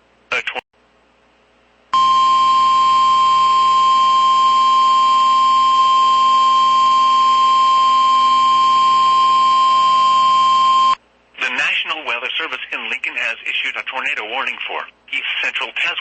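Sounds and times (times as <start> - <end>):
steady loud alarm tone: 2.0 - 11.0.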